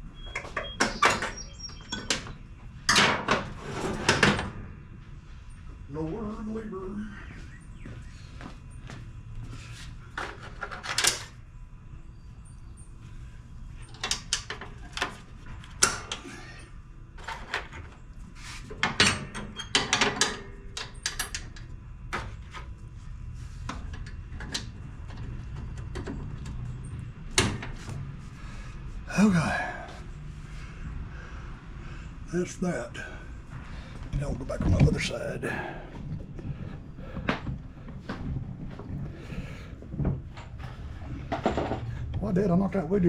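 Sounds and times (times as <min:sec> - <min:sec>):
low steady hum: 0:00.0 - 0:43.0
metal knocks and clanks: 0:39.9 - 0:42.2.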